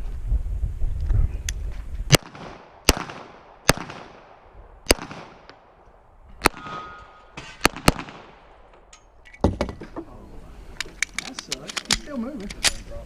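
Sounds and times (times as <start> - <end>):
handgun shots with echo: 2.1 - 4.3, 6.4 - 8.4.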